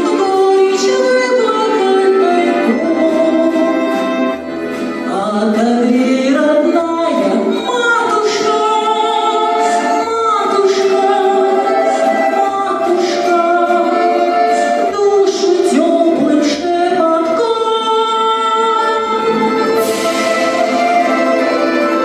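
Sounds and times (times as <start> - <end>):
children's choir singing: 8.0 - 16.5, 18.8 - 22.0.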